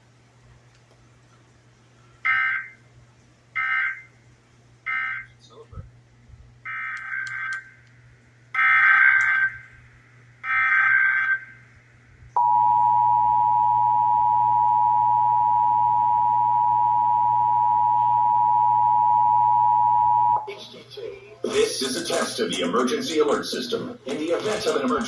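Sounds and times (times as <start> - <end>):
two-tone attention signal: 12.4 - 20.5.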